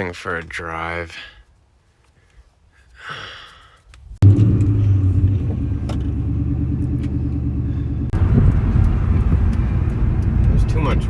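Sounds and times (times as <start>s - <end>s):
car engine rumbling: 4.2s - 11.0s.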